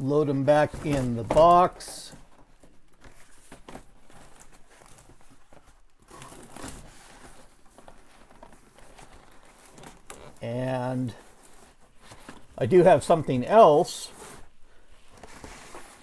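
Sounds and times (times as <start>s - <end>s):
packaging crinkling and rustling: 0.3s - 10.4s.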